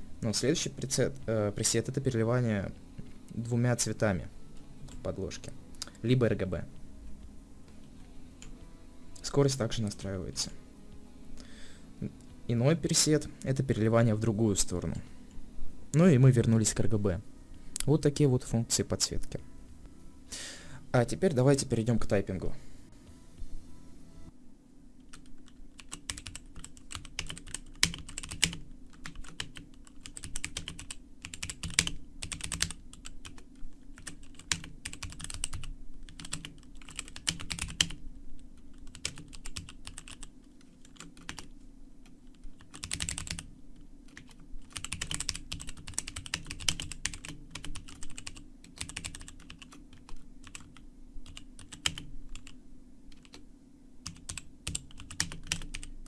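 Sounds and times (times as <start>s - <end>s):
mechanical keyboard typing: 25.1s - 33.4s, 34.0s - 38.0s, 38.7s - 41.5s, 42.3s - 43.5s, 44.1s - 53.4s, 54.0s - 55.9s.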